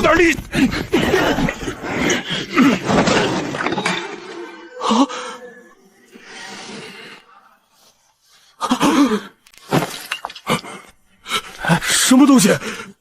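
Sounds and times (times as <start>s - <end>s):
groaning and gasping voices: 0.2s - 7.8s.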